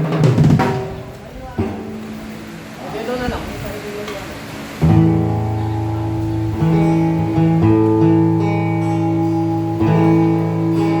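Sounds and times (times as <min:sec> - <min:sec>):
guitar playing chords: 0:00.0 - 0:11.0.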